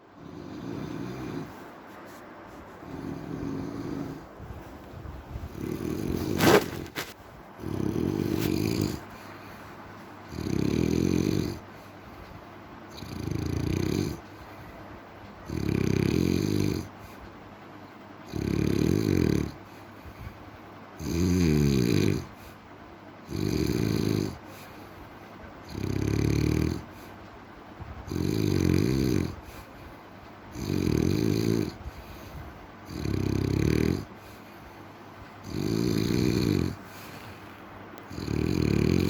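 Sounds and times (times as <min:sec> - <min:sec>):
quiet breathing: 0:00.0 - 0:10.4, 0:19.5 - 0:20.8, 0:24.4 - 0:25.6, 0:29.3 - 0:30.4, 0:31.7 - 0:39.0
person snoring: 0:00.2 - 0:01.6, 0:02.9 - 0:04.3, 0:05.5 - 0:09.1, 0:10.3 - 0:11.6, 0:32.9 - 0:34.1, 0:35.5 - 0:37.2, 0:38.1 - 0:39.0.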